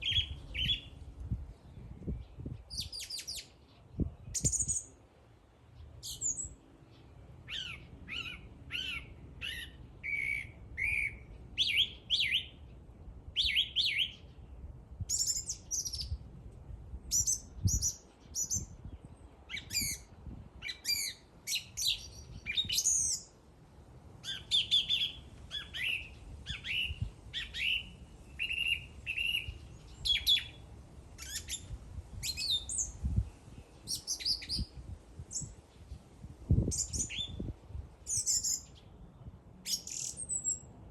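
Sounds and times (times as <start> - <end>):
songbird chirping: 0.0 - 12.8, 24.2 - 37.5, 38.1 - 40.8.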